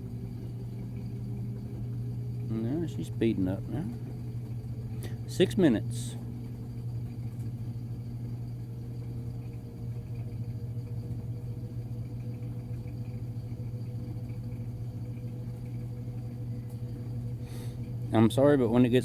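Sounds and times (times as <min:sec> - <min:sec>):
washing machine spinning: 0:00.0 - 0:19.0.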